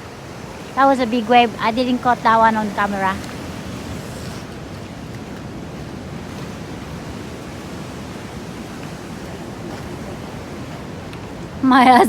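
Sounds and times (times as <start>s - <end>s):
ocean surf breaking: 0.0s - 12.0s.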